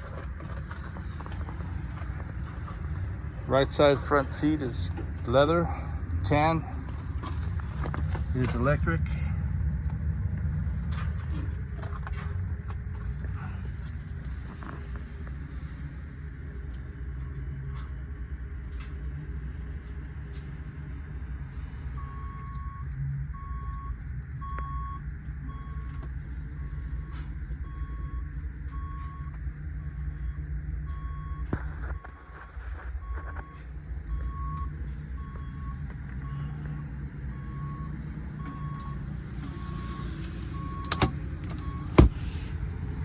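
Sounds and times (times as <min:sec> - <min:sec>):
engine rumble: 0:00.0 - 0:43.0
vehicle reversing alarm beeps: 0:21.9 - 0:42.5.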